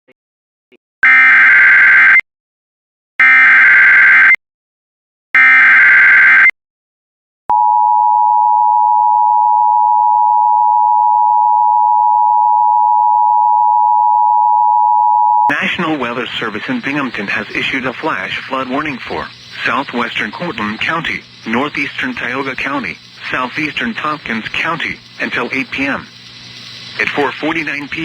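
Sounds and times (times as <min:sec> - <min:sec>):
warbling digital data tones: 0:15.5 - 0:28.0.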